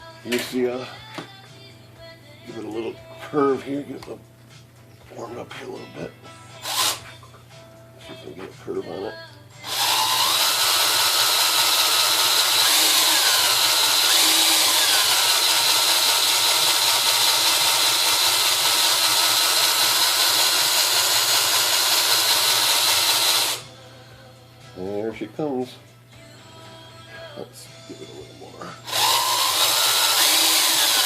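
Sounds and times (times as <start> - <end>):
electric drill whine: 9.6 - 23.6, 28.9 - 31.0.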